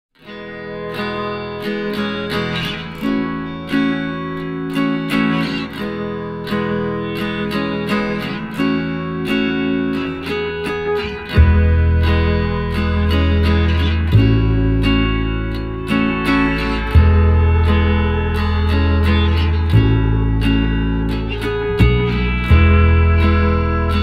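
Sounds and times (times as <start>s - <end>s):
acoustic guitar strumming: 0.2s - 24.0s
deep bass line: 11.3s - 24.0s.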